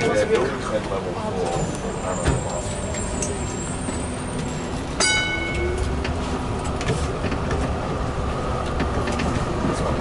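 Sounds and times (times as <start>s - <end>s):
tram rumbling: 0.0s - 10.0s
tram bell ding: 5.0s - 6.1s.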